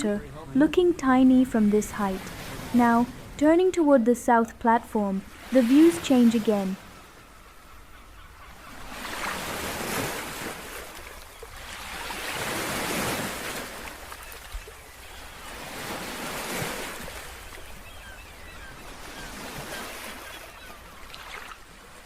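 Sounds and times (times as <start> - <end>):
ocean surf: 0.0 - 8.0, 8.6 - 17.9
wind: 0.0 - 22.0.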